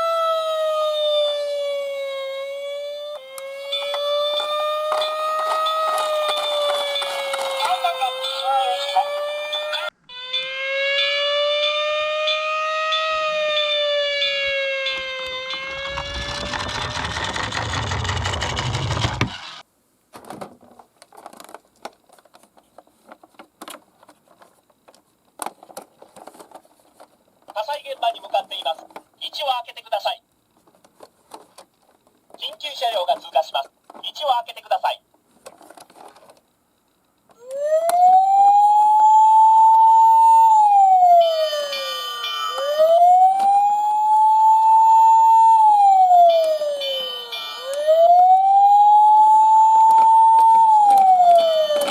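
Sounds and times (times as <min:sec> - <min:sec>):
siren: 0:00.0 - 0:19.6, 0:37.4 - 0:51.9
toy cars rattling down a slope: 0:03.8 - 0:08.5, 0:15.5 - 0:19.6, 0:49.9 - 0:51.9
higher steady tones: 0:38.9 - 0:49.8.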